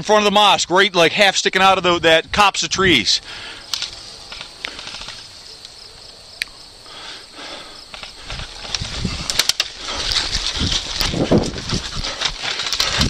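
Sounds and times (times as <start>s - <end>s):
sharp clicks: 3.7s - 6.6s
footsteps: 7.4s - 13.0s
gear rustling: 7.9s - 13.0s.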